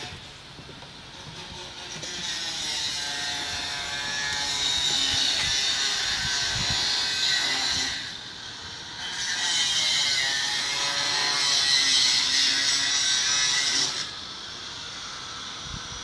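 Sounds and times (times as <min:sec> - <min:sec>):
electric power tool whirring: 0:01.1 - 0:16.0.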